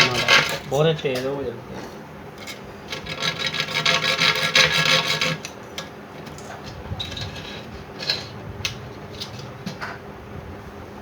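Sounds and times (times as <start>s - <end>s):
hard scraping against wood: 0.0s - 0.8s, 2.9s - 5.5s, 6.5s - 9.9s.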